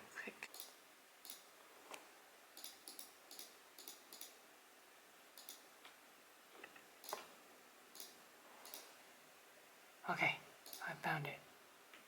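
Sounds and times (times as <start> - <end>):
faint computer clicks: 2.6 - 4.4, 8.0 - 8.9, 10.6 - 10.9.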